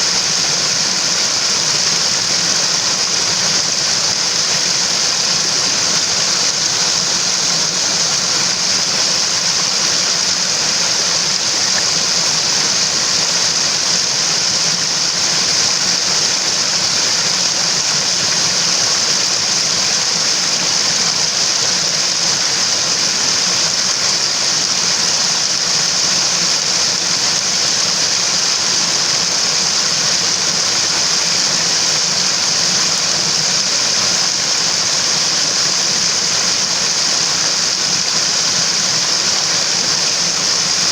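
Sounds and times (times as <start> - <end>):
stream rushing over rocks: 0.0 - 40.9.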